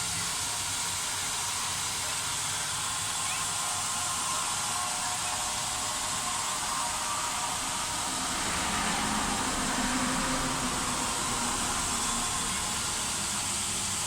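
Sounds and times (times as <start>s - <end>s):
low hum: 3.6s - 14.0s.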